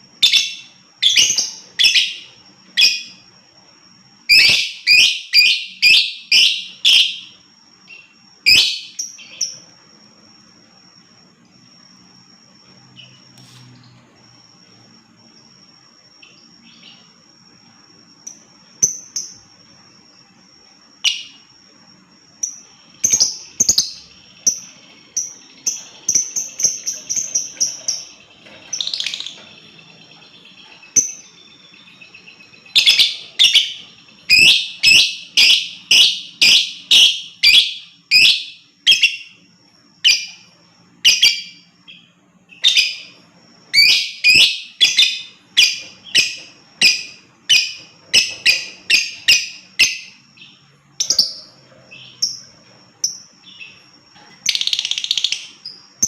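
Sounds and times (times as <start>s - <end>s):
lovebird shrill chirps: 0.2s - 3.2s, 4.2s - 9.6s, 30.5s - 39.4s, 40.0s - 52.4s, 54.4s - 55.8s.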